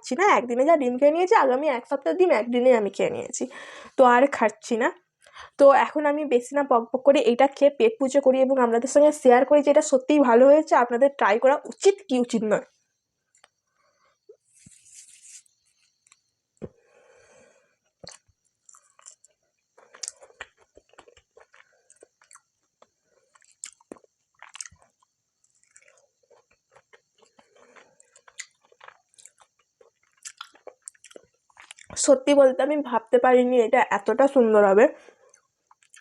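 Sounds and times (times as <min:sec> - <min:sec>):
person chewing crunchy snack: 0:17.8 - 0:32.0, 0:35.2 - 0:36.0.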